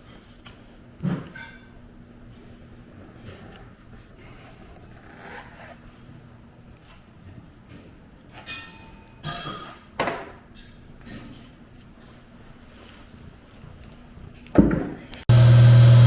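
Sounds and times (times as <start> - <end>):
metal objects clinking and clanking: 8.4 - 9.8.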